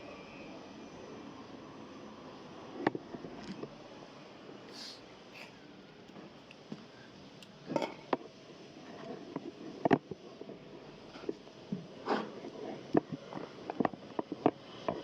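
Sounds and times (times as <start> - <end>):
low room noise: 0.0 - 15.0
short hisses: 4.7 - 5.5.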